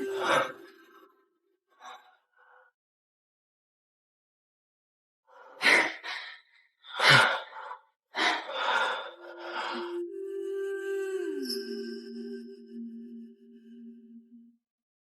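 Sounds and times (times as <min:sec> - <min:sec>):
soft steady music tone: 0:00.0 - 0:01.0, 0:09.3 - 0:14.6
person gasping and breathing heavily: 0:05.4 - 0:09.9.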